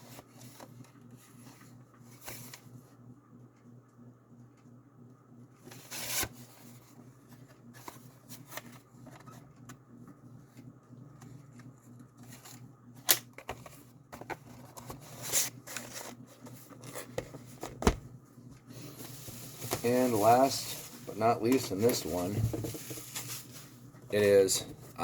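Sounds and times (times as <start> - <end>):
packaging rustling: 18.7 - 24.5.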